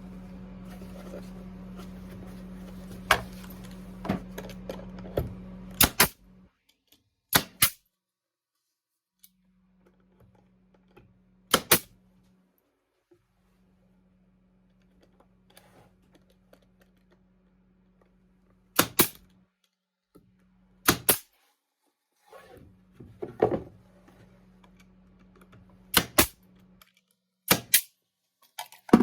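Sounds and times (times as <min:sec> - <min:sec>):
steady electrical hum: 0:00.0 - 0:06.5
sharp snapping impacts: 0:05.8 - 0:06.2, 0:07.3 - 0:07.8, 0:11.5 - 0:11.9, 0:18.8 - 0:19.2, 0:20.8 - 0:21.2, 0:25.9 - 0:26.4, 0:27.5 - 0:27.9.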